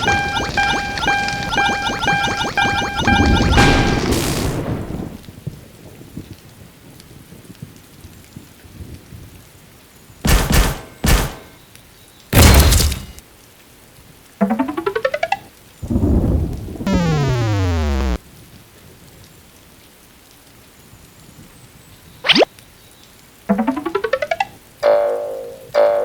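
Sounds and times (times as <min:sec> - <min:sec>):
sudden loud crashes: 0:00.0 - 0:05.2
steady rain-like hiss: 0:00.0 - 0:10.2, 0:13.2 - 0:14.4, 0:15.6 - 0:23.5.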